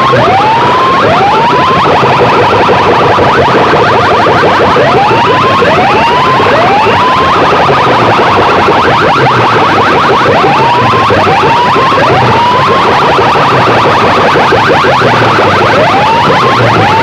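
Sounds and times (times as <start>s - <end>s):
rapid buzzing pulse: 0.0s - 17.0s.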